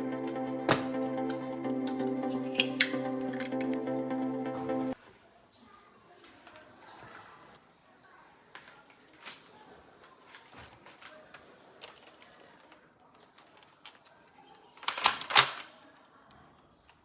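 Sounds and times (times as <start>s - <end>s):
plastic toy gun parts clicking: 10.2s - 17.0s.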